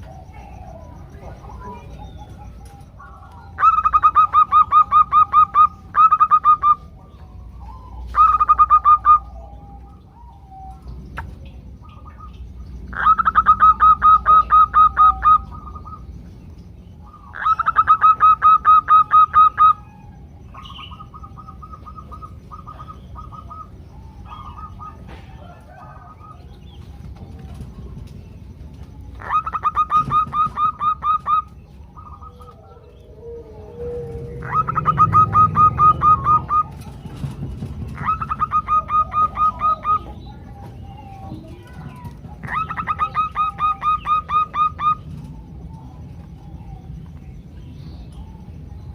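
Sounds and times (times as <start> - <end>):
doves calling in rapid runs: 0.0 - 48.9.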